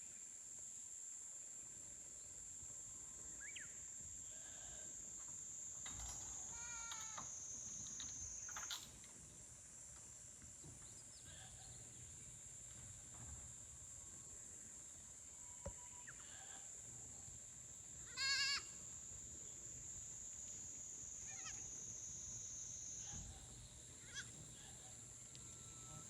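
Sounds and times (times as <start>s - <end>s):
insects droning: 0.0s - 26.0s
goat bleating: 18.1s - 18.7s.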